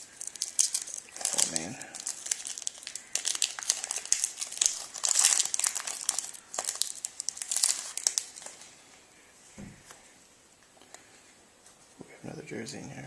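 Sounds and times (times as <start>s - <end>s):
card pack wrapper crinkling: 0.0s - 8.7s.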